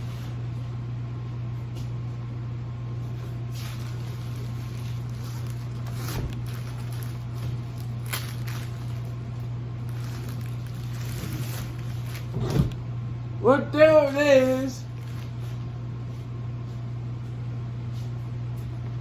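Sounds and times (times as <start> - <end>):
steady low hum: 0.0 - 19.0
plastic packaging rustling: 3.2 - 12.8, 14.4 - 15.7.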